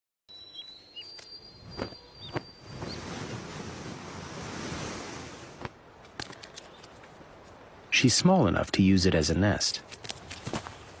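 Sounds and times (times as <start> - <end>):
bird chirps: 0.3 - 3.4
rush of wind: 1.5 - 8.0.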